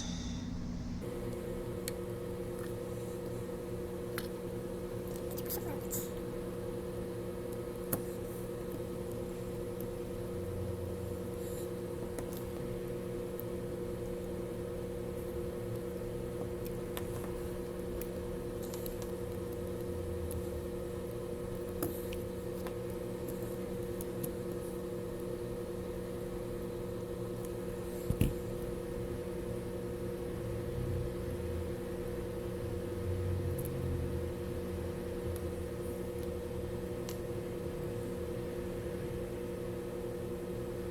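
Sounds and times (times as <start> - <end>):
electrical hum: 0.0 - 40.9.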